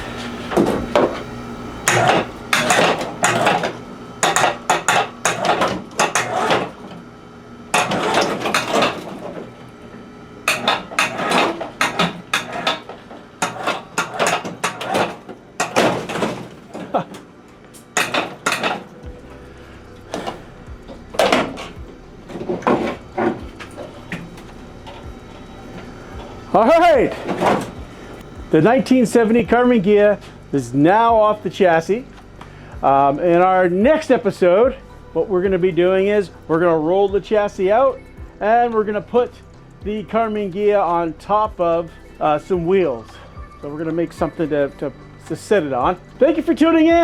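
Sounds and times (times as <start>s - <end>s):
metal clanking and clattering: 0.0s - 7.0s, 7.7s - 9.7s, 10.5s - 28.2s.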